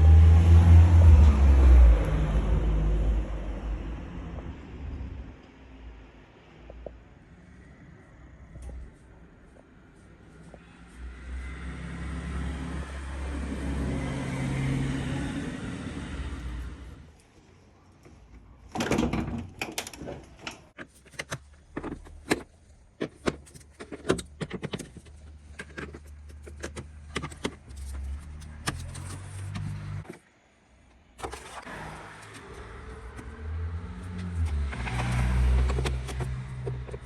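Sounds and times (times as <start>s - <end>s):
irregular clicks and knocks: 18.0s - 30.2s.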